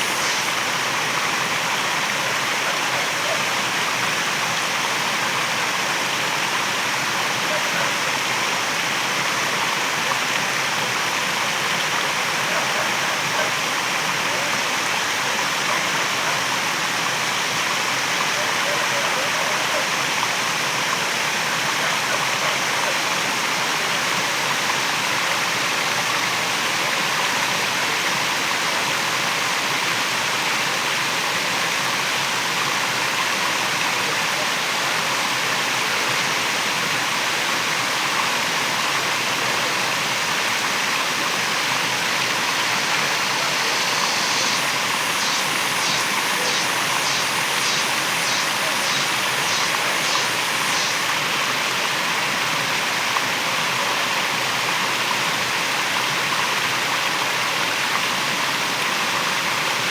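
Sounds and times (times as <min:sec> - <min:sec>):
waterfall rushing: 0:00.0 - 0:26.3, 0:39.9 - 0:59.2.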